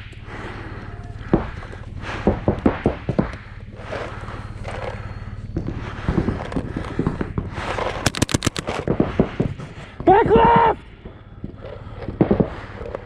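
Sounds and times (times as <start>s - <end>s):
paintball markers firing: 8.1s - 8.8s.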